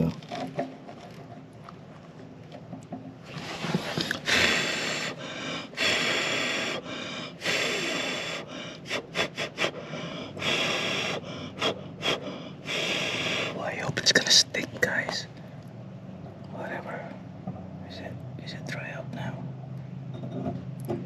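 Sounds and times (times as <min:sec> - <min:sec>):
loud breaths close to microphone: 0:03.3 - 0:13.8.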